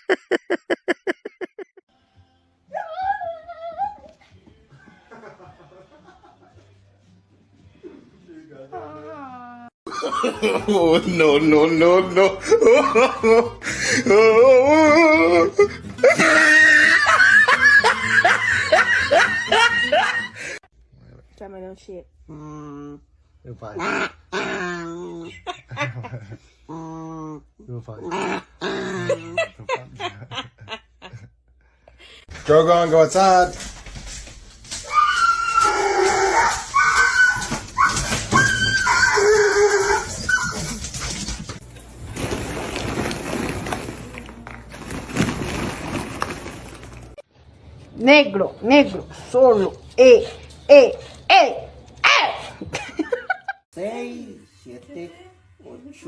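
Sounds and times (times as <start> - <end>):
person laughing hard: 0.0 - 1.8, 12.1 - 20.5
dog crying: 34.8 - 41.0.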